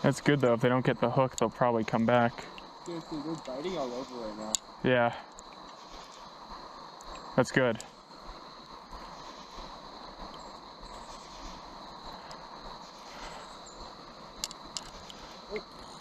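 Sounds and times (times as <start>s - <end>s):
faint clicks: 14.4s - 15.7s.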